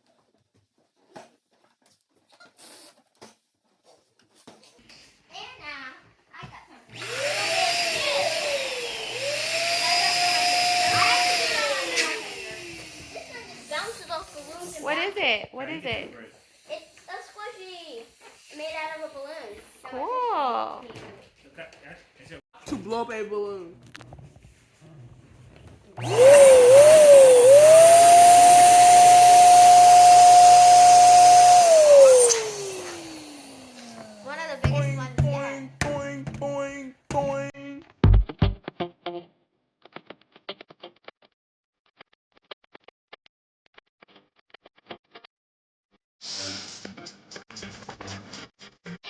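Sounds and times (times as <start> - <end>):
balloon air squealing and hissing: 10.6 - 14.0, 26.2 - 34.3.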